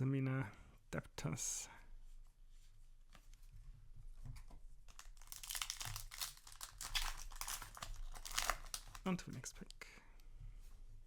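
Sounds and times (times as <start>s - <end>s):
foil wrapper crinkling: 4.9s - 9.3s.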